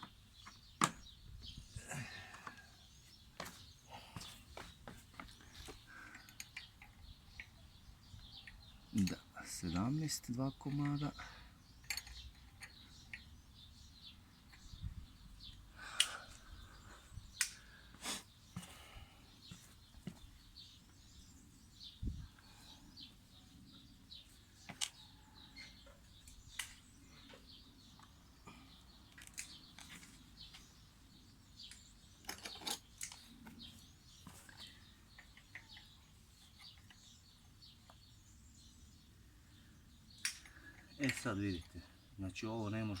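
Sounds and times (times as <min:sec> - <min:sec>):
birds chirping: 0:00.0 - 0:43.0
wrench clinking on metal nuts: 0:11.8 - 0:13.2.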